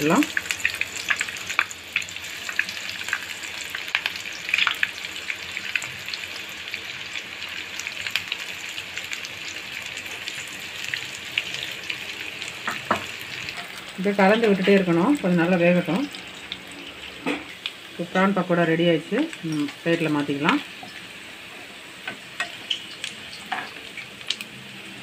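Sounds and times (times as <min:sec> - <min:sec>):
oil crackling and popping: 0:00.0 - 0:15.3, 0:15.9 - 0:18.1, 0:22.4 - 0:24.6
fritters sizzling in hot oil: 0:00.0 - 0:25.0.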